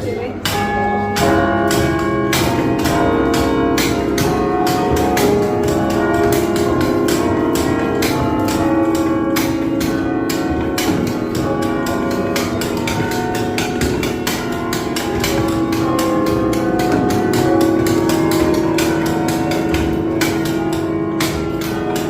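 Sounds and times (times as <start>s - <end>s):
carillon bells playing a melody: 0.4s - 22.0s.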